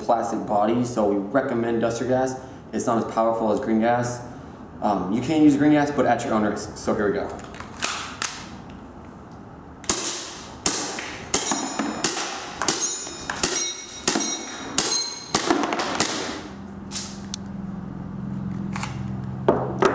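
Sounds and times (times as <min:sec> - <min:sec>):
faint steady hum: 0:00.0 - 0:19.8
airsoft pistol shots: 0:09.8 - 0:16.5
ejected shells ringing: 0:11.4 - 0:15.5.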